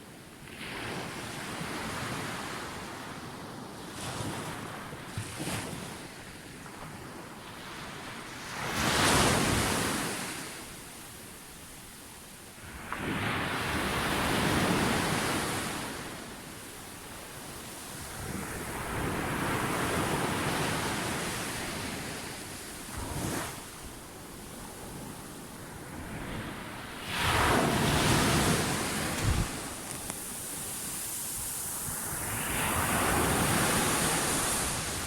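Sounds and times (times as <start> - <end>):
wind noise on microphone: 17.1 - 35.0
sea waves breaking: 26.2 - 35.0.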